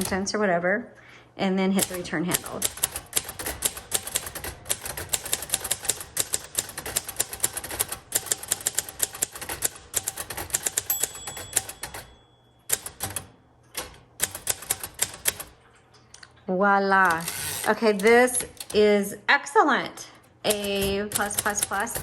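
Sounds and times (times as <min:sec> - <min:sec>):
heavy typewriter clacks: 0:00.0 - 0:00.3, 0:01.8 - 0:15.6, 0:17.0 - 0:19.0, 0:20.5 - 0:22.0
typewriter typing: 0:00.0 - 0:00.3, 0:01.8 - 0:15.6, 0:17.0 - 0:19.0, 0:20.4 - 0:22.0
typewriter bell ringing: 0:10.0 - 0:13.3.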